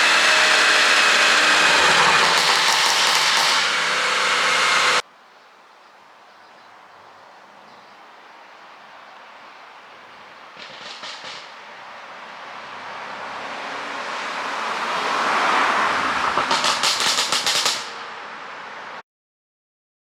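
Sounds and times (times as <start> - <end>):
car engine and exhaust: 0.0 - 5.0, 10.6 - 19.0
exhaust pops and crackles: 0.9 - 5.0, 10.6 - 11.7, 16.4 - 18.0.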